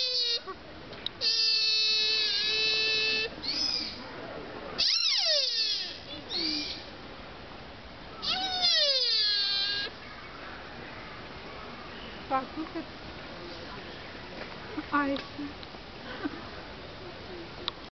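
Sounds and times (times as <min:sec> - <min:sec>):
deer wailing calls: 0:08.2 - 0:09.9.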